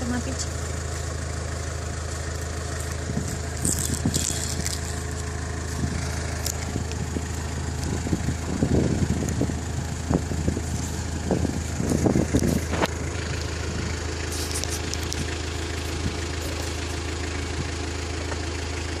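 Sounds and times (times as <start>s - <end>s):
low engine-like hum: 0.0s - 19.0s
horse crunching celery: 2.3s - 8.0s, 14.3s - 17.0s.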